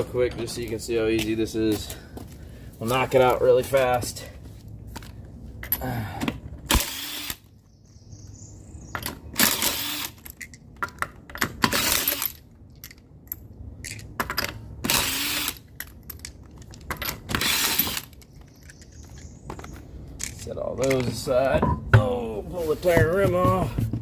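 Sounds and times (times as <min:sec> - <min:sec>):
impact wrench bursts: 0:06.7 - 0:07.4, 0:09.4 - 0:10.2, 0:11.6 - 0:12.4, 0:14.8 - 0:15.7, 0:17.2 - 0:18.2.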